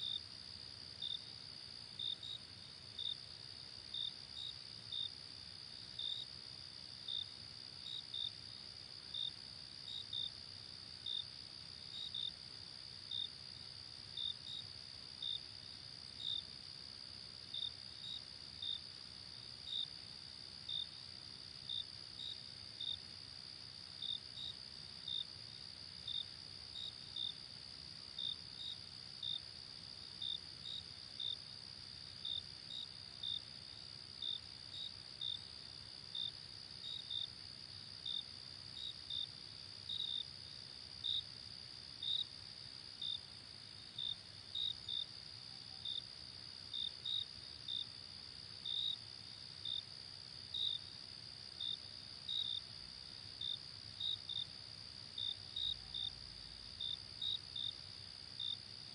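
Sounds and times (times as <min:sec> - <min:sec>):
crickets chirping: 0:00.0 - 0:58.9.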